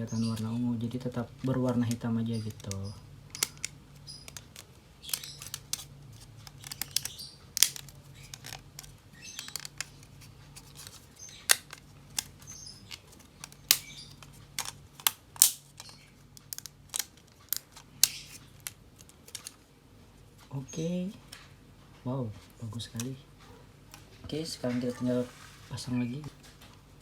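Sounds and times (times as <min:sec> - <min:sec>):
plastic parts clicking and tapping: 0:00.2 - 0:19.6
plastic parts snapping together: 0:01.7 - 0:19.6.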